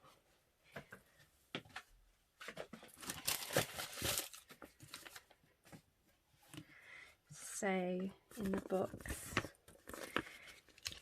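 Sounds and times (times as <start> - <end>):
packaging rustling and crinkling: 2.4 - 5.4, 8.3 - 11.0.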